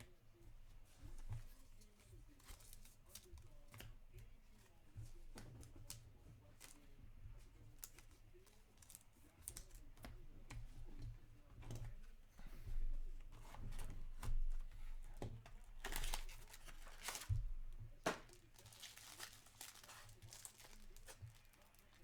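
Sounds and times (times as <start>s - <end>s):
wrappers crinkling: 15.7s - 17.4s, 18.0s - 22.0s
card packs tearing open: 18.3s - 21.9s.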